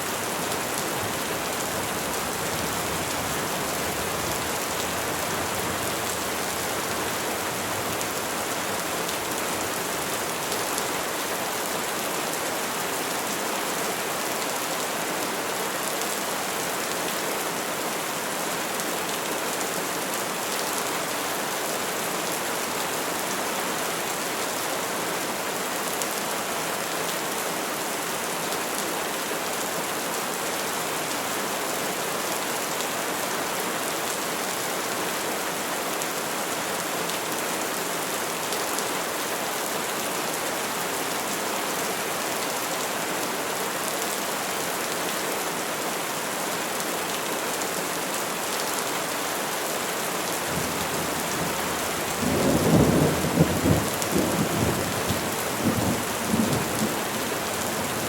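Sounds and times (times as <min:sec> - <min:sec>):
rain falling on trees: 0:00.0 - 0:58.0.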